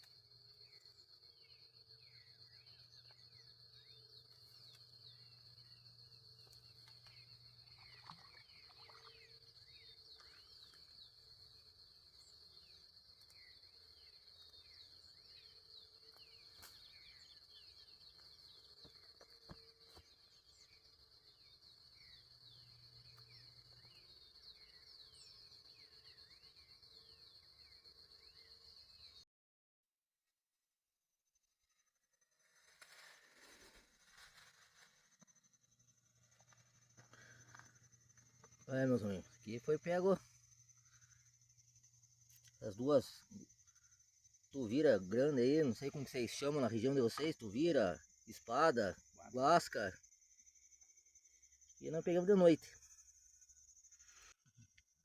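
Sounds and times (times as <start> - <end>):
bird chirps: 0.0 - 29.2
high-pitched insect trill: 0.0 - 29.2, 31.4 - 55.0.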